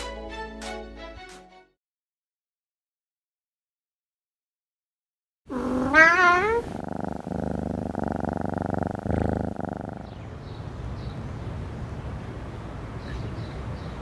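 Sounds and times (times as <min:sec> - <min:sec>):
cat meowing: 0:05.5 - 0:09.5
cat purring: 0:05.5 - 0:10.4.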